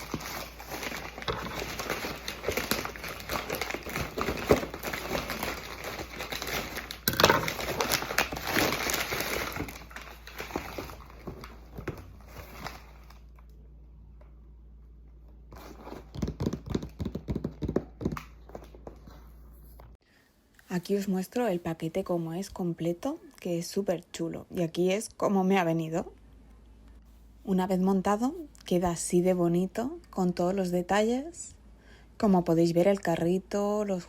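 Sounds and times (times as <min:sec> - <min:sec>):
packaging crinkling and rustling: 0:00.0 - 0:13.5.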